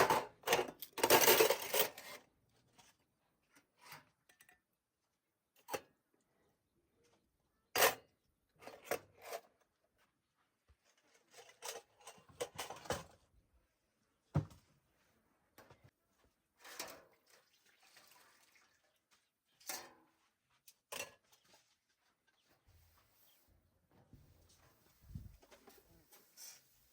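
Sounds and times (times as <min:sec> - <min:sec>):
kitchen utensils clattering: 0:00.0 - 0:02.2.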